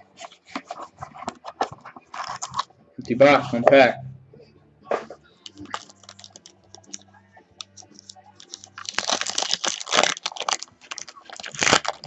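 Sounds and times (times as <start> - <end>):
card pack wrapper crinkling: 0.2 - 2.7, 5.4 - 7.0, 7.6 - 12.0.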